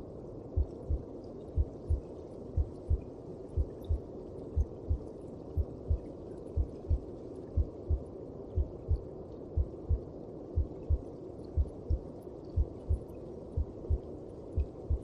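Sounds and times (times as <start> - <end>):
heartbeat thumps: 0.6 - 1.0, 1.6 - 2.0, 2.6 - 3.0, 4.6 - 5.0, 6.6 - 7.0, 7.6 - 8.0, 10.6 - 11.0, 11.6 - 12.0, 12.6 - 13.0, 13.6 - 14.0, 14.6 - 15.0.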